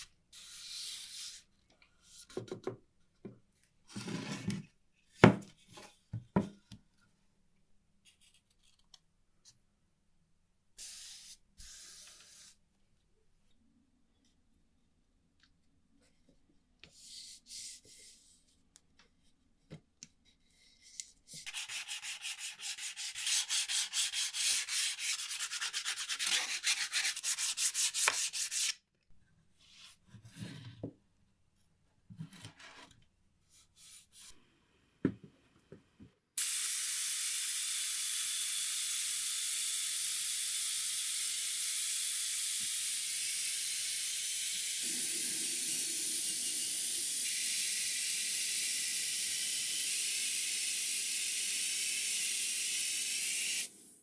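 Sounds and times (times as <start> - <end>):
sandpaper rubbing on wood: 21.5 - 28.8.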